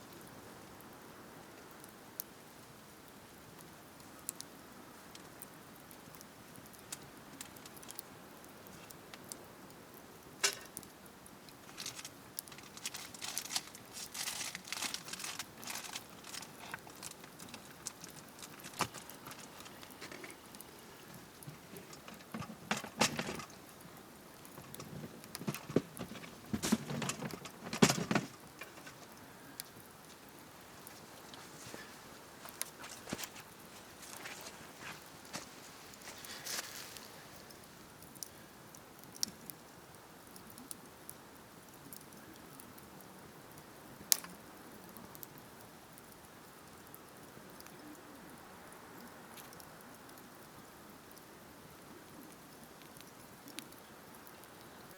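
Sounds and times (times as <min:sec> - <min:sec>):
campfire crackling and popping: 0:00.0 - 0:54.9
rustling and knocking: 0:21.4 - 0:23.6, 0:24.6 - 0:29.1.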